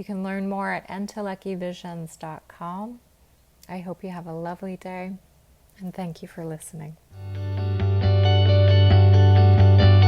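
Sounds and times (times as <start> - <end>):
plucked notes: 7.2 - 10.0.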